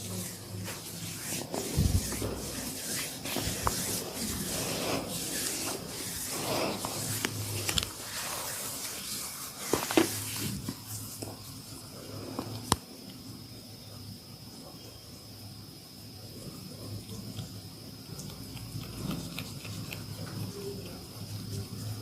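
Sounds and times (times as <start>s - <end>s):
hands rubbing skin and hair: 0.0s - 11.6s.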